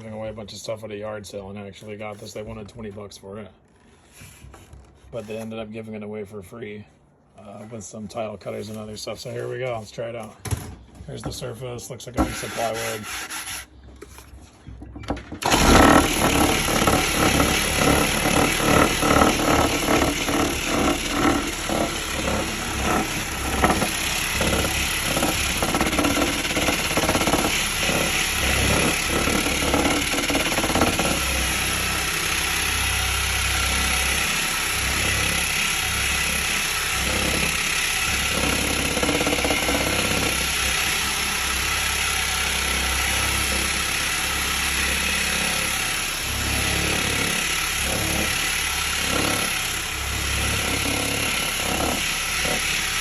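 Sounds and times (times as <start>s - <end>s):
orbital sander on plywood: 12.2s - 13.7s, 15.4s - 53.0s.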